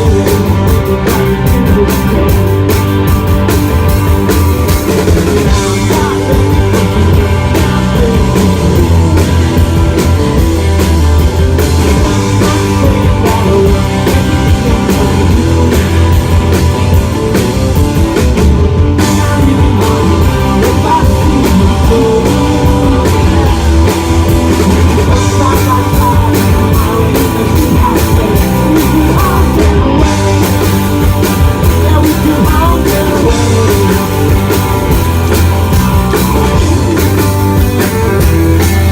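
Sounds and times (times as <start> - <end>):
live rock band playing: 0.0 - 38.9.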